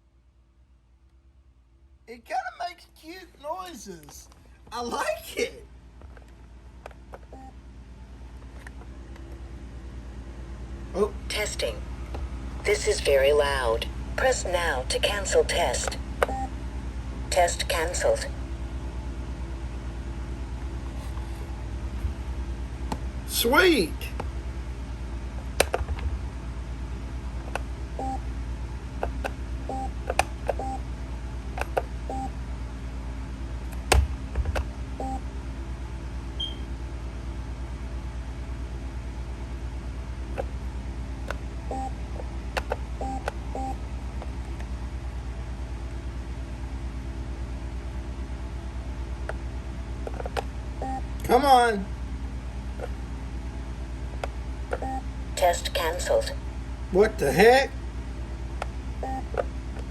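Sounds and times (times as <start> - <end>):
steady low hum: 0.0 - 59.9
soft two-tone beep: 36.4 - 36.6.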